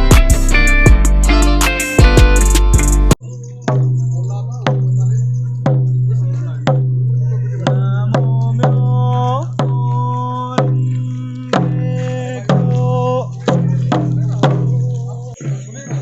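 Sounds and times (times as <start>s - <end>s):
chanting: 3.2s - 16.0s
hand drums struck in steady beat: 3.6s - 4.9s, 5.6s - 16.0s.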